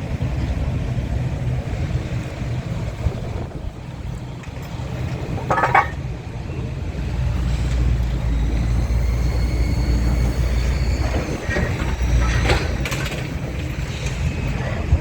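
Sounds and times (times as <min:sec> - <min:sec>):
heavy engine rumbling: 0:00.0 - 0:15.0
metallic clatter: 0:05.3 - 0:06.0.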